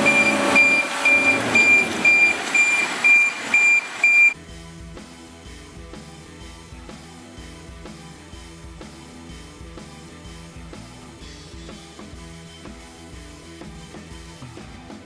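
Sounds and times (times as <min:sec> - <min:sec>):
vehicle back-up alarm beeping: 0:00.0 - 0:04.4
diesel engine running: 0:00.0 - 0:14.9
rock music with guitar and drums: 0:04.4 - 0:15.0.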